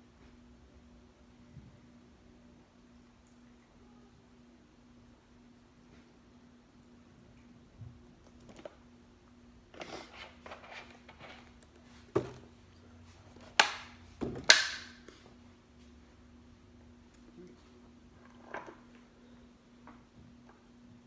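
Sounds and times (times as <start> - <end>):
objects knocking and clattering: 12.1 - 12.5.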